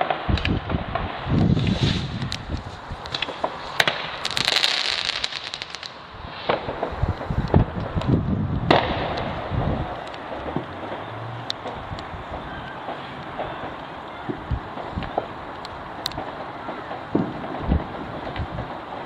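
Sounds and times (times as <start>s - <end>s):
fireworks bangs and cracks: 0.0s - 19.0s
fireworks crackling: 0.0s - 19.0s.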